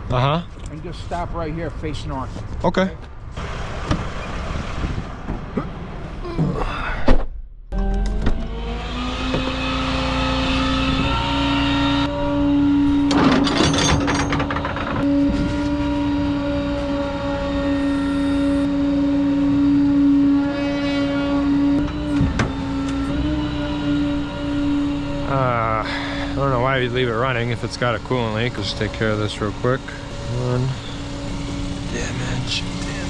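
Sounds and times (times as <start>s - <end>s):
hydraulic mechanical whine: 7.8s - 33.0s
short clatters and knocks: 13.1s - 15.4s.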